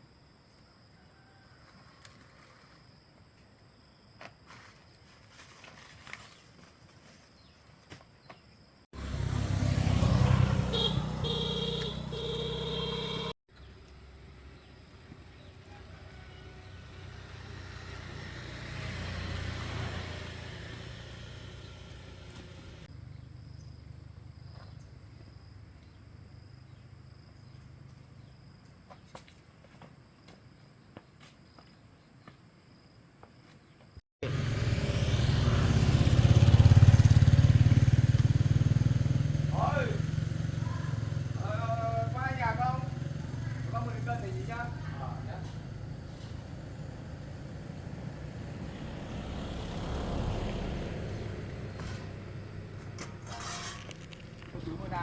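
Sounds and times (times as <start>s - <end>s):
vehicle passing by: 9.0s - 13.4s, 15.6s - 23.2s, 34.2s - 55.0s
vehicle engine starting: 34.2s - 41.6s, 42.5s - 55.0s.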